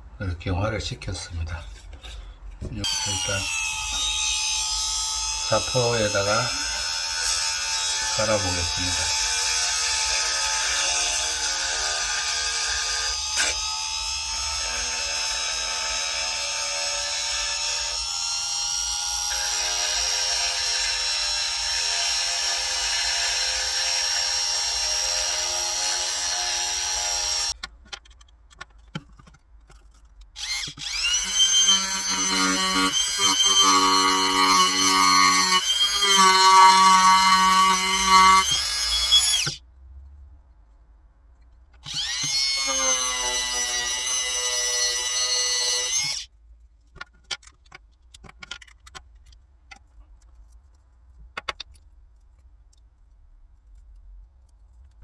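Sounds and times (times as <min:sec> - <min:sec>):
rotary tool sanding: 0:30.4 - 0:39.6, 0:41.8 - 0:46.3.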